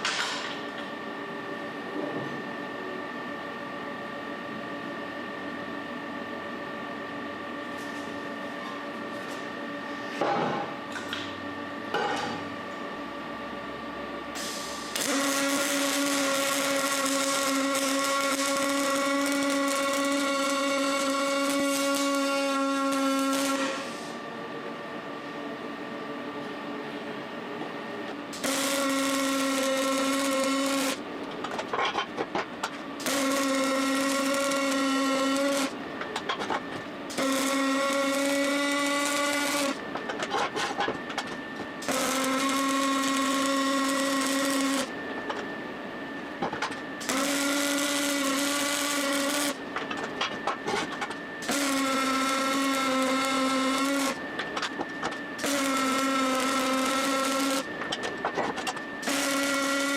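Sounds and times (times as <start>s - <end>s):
power tool motor whining: 15.0s - 23.9s, 33.0s - 36.2s, 37.1s - 40.8s, 41.8s - 44.9s, 47.0s - 59.9s.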